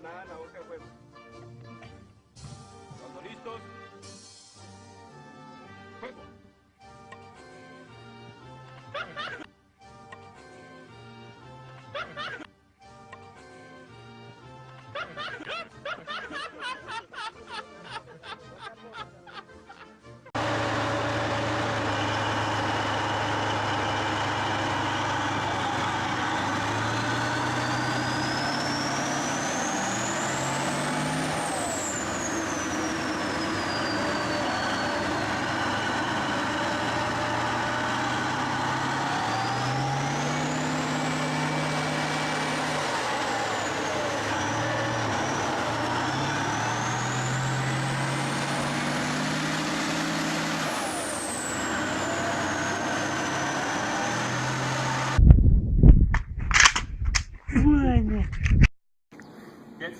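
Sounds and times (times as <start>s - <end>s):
heavy vehicle engine revving: 20.3s - 55.3s.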